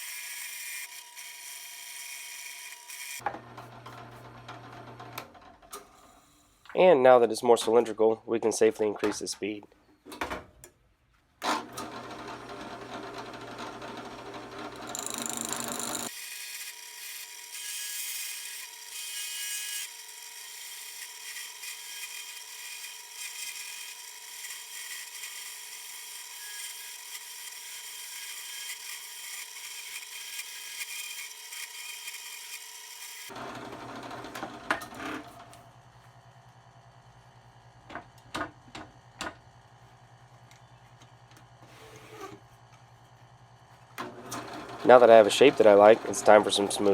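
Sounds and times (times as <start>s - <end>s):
drill press motor hum: 11.4s - 16.1s, 44.0s - 46.9s.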